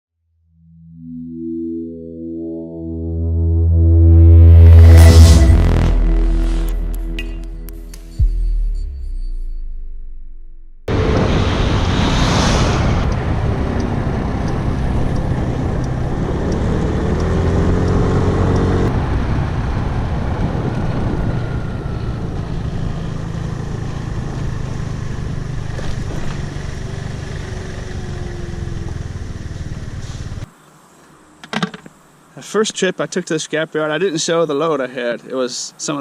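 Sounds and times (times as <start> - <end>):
vehicle engine accelerating: 2.9 - 30.5
road and wind noise: 10.9 - 32.4.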